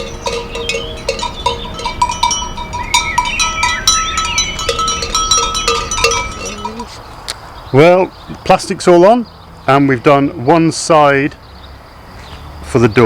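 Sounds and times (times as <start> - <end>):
livestock bells clanking: 0.0 - 7.0.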